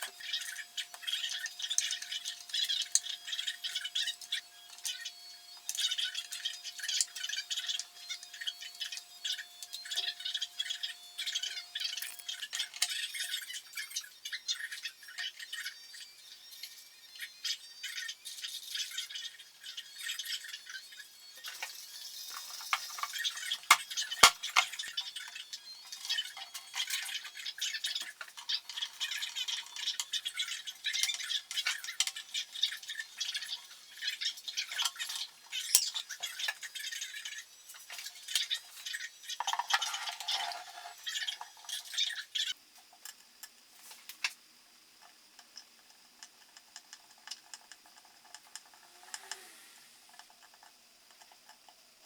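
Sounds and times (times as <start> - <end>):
small parts clicking and rattling: 0.0 - 15.8, 17.9 - 44.4
scraping of small parts: 21.4 - 42.2.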